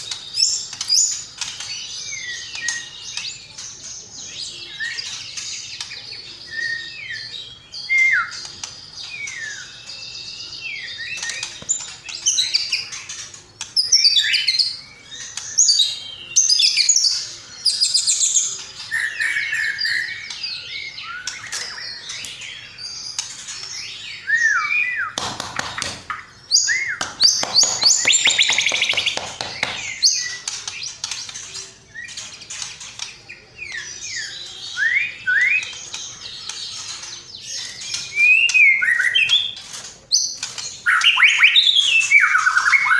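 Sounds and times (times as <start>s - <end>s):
songbird chirping and trills: 0.0s - 42.9s
harsh bird chattering: 27.0s - 30.3s.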